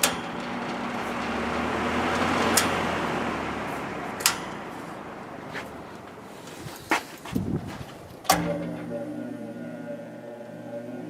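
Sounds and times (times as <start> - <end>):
fan air rushing: 0.0 - 11.0
fan motor hum: 0.0 - 11.0.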